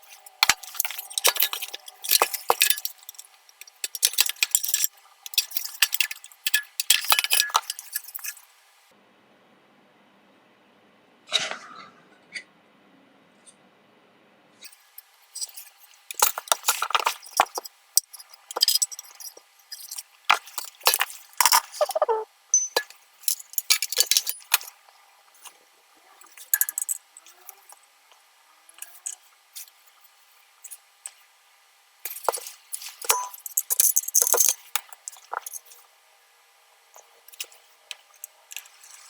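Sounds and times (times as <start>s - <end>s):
small metal tools clinking: 0.0s - 8.4s, 14.6s - 24.8s, 26.2s - 27.8s, 28.7s - 29.7s, 32.1s - 35.9s, 37.0s - 39.0s.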